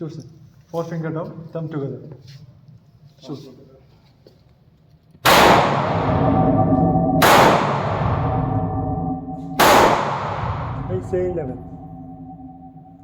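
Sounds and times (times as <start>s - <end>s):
gunshots with ringing echo: 5.3s - 13.0s.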